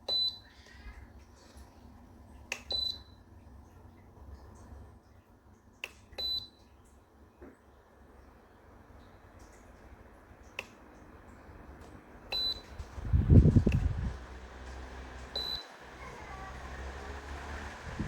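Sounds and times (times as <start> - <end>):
short high beeps: 15.4 - 15.7.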